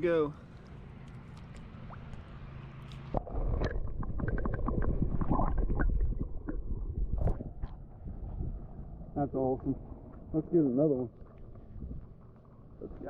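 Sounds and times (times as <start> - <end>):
water splashes: 0.4 - 7.8
water sloshing and gurgling: 0.4 - 10.3.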